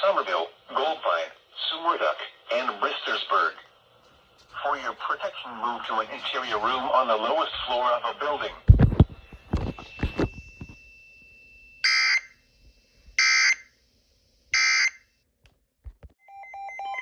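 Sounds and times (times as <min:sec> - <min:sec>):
stepped beeping tones: 0:11.8 - 0:12.3, 0:13.2 - 0:13.7, 0:14.6 - 0:15.0
screechy digital data tones: 0:11.8 - 0:12.4, 0:13.2 - 0:13.7, 0:14.6 - 0:15.0.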